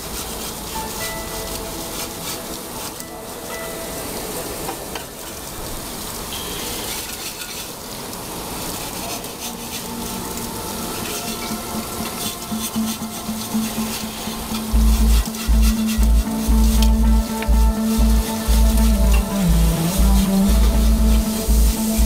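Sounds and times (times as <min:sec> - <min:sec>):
cleaning fluid splashing and hissing: 0:00.0 - 0:22.0
parts washer running: 0:09.2 - 0:22.0.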